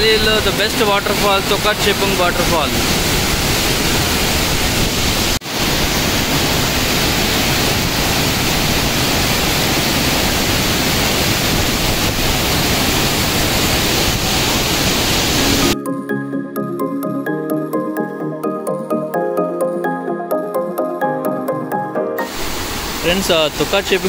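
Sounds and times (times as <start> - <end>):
waterfall rushing: 0.0 - 15.8, 22.2 - 24.0
background music: 15.4 - 22.4.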